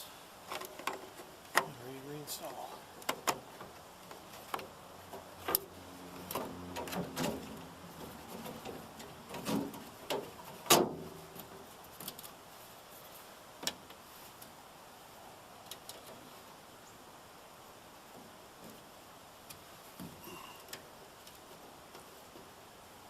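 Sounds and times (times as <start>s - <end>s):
clicks and knocks of handling: 0.5s - 1.8s, 3.0s - 12.4s.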